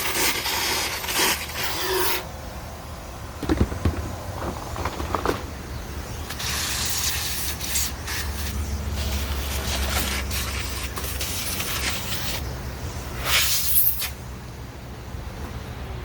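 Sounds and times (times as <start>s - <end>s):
compressed air hissing: 13.2s - 14.2s.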